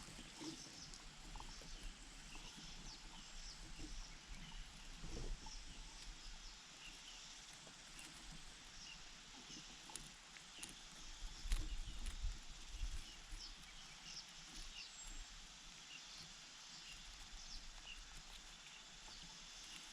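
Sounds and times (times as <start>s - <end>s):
soft rustles: 7.1s - 16.3s.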